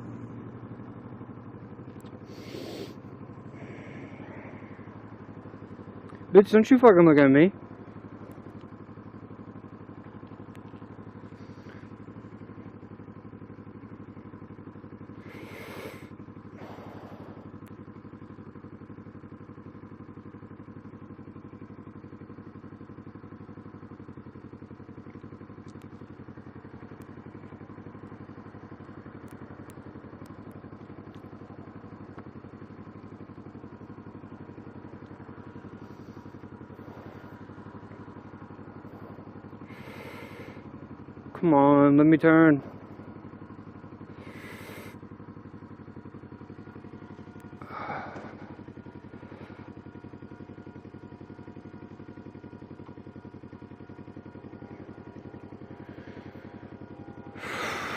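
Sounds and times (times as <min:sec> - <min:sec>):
motorcycle engine idling: 0:00.0 - 0:57.9
short hissing sounds: 0:02.3 - 0:03.0.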